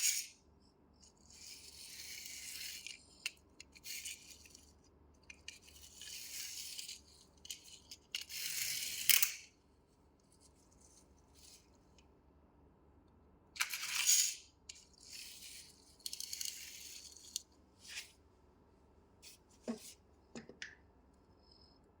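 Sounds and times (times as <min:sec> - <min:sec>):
small objects rustling and rattling: 0:13.6 - 0:18.1.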